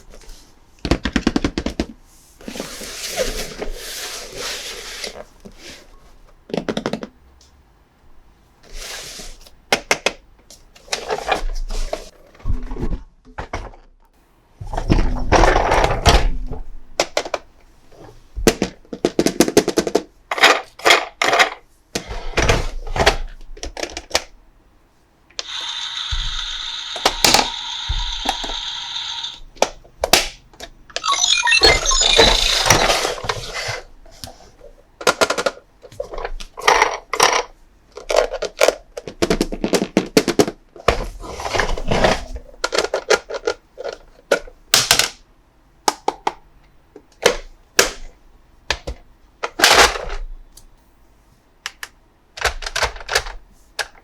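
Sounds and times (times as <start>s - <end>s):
electronic buzzing tone: 31.0s - 32.8s.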